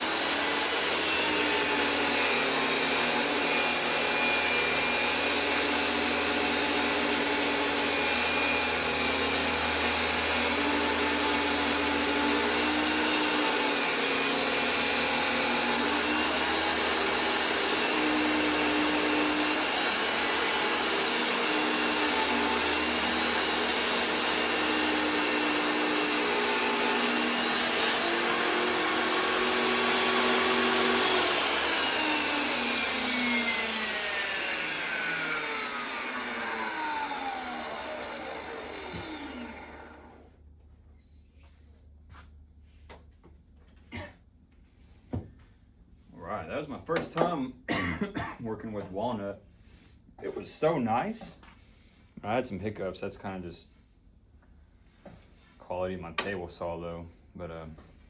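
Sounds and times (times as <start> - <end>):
power tool motor whining on wood: 0.0 - 40.3.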